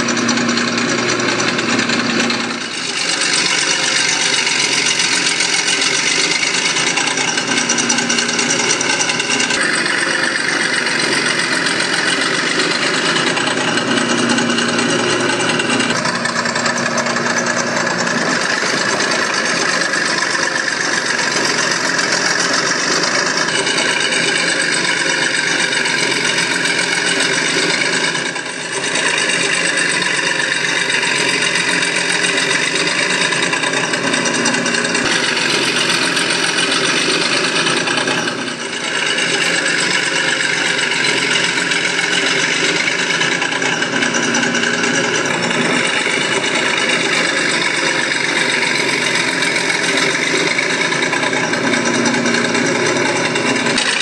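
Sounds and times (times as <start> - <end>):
engine running steadily: 0.0 - 54.0.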